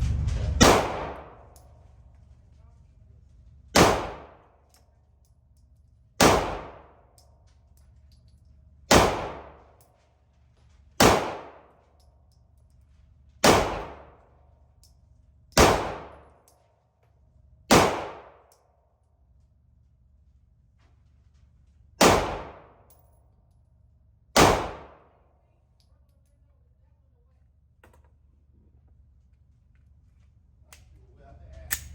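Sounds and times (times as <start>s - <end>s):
handgun shots with ringing echo: 0.6s - 1.6s, 3.8s - 4.5s, 6.2s - 7.1s, 8.9s - 9.8s, 11.0s - 11.7s, 13.4s - 14.2s, 15.6s - 16.5s, 17.7s - 18.6s, 22.0s - 22.9s, 24.4s - 25.1s.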